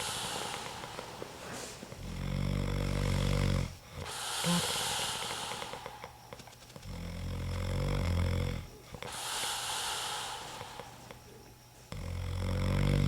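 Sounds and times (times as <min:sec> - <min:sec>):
man snoring: 0:00.0 - 0:01.1, 0:01.9 - 0:06.2, 0:06.8 - 0:11.1, 0:11.9 - 0:13.0
hissing breath out: 0:00.0 - 0:01.9, 0:04.0 - 0:06.3, 0:09.0 - 0:11.1.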